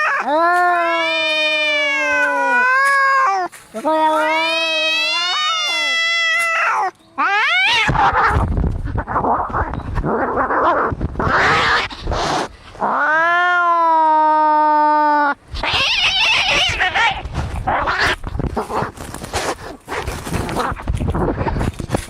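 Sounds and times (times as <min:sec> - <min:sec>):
cat yowling: 0:00.0 - 0:11.9, 0:12.8 - 0:18.2
cats hissing and snarling: 0:00.0 - 0:22.0.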